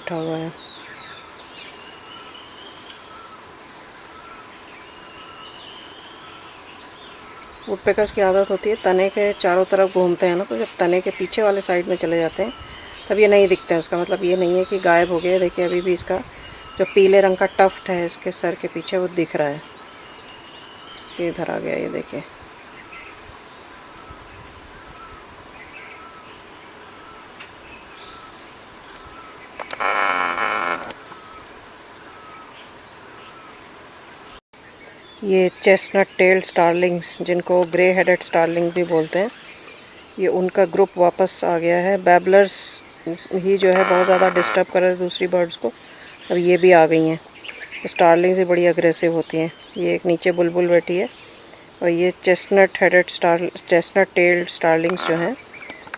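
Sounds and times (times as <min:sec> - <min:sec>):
birds calling: 0:00.0 - 0:55.9
distant bird whistles: 0:29.1 - 0:32.6
high-pitched insect drone: 0:29.6 - 0:31.3, 0:43.6 - 0:46.2.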